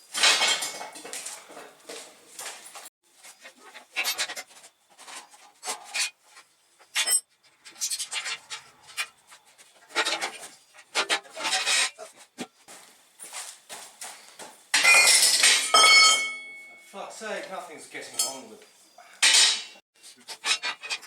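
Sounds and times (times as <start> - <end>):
metal bike parts scraping: 0.0 - 1.1, 2.8 - 12.5, 19.2 - 21.0
metallic ring: 14.8 - 17.0.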